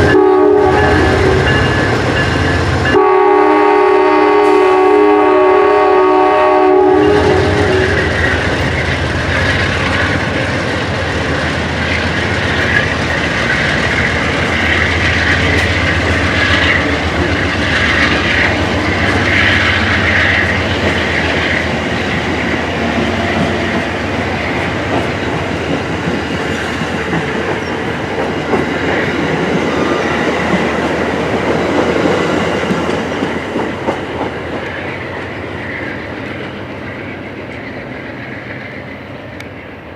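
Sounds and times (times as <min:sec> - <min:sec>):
train wheels clacking on rails: 0:00.0 - 0:03.4, 0:04.0 - 0:39.7
train horn: 0:00.0 - 0:08.8, 0:12.6 - 0:25.6
diesel locomotive engine rumble: 0:00.0 - 0:39.9.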